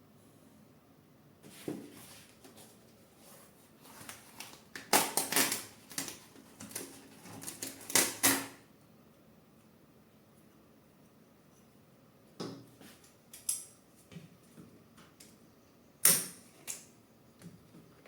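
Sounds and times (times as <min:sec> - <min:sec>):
hands handling plastic parts: 0:01.5 - 0:08.5.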